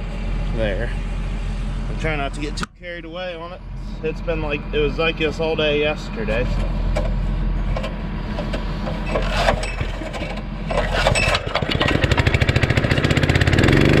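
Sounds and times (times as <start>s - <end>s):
recoil starter rope pulls: 6.3s - 12.8s
small engine running: 6.4s - 14.0s.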